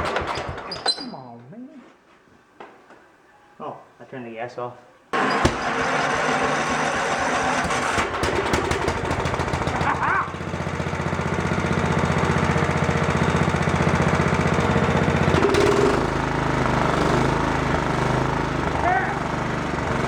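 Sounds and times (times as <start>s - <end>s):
lawn mower engine idling: 0.0s - 0.7s, 5.1s - 20.0s.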